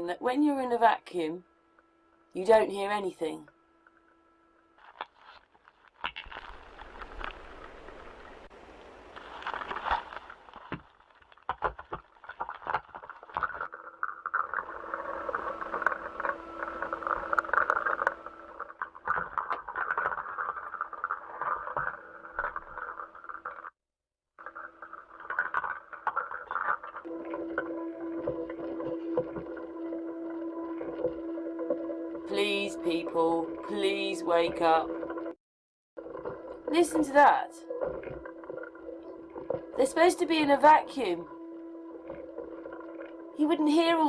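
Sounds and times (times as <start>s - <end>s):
crackling radio hiss: 0.0s - 23.8s, 24.4s - 35.4s, 36.0s - 44.0s
clicks and pops: 9.1s - 23.7s
held hum: 11.6s - 23.7s, 24.4s - 35.4s, 36.0s - 44.0s.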